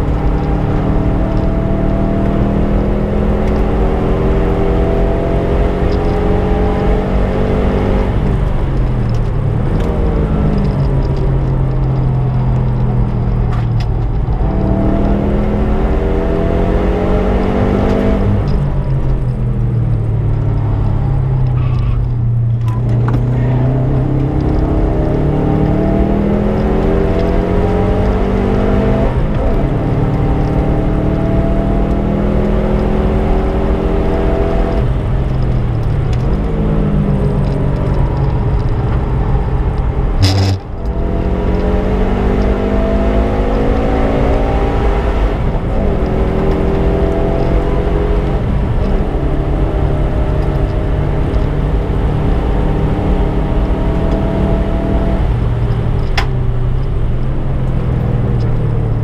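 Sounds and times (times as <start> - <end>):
car engine revving hard: 0.0 - 10.8, 14.3 - 18.5, 22.9 - 34.8, 38.2 - 56.2.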